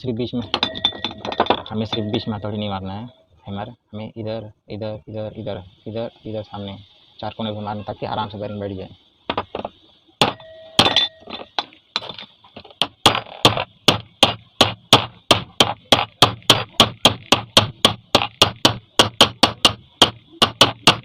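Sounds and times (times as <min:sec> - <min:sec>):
hammer tapping metal: 0:09.3 - 0:21.0.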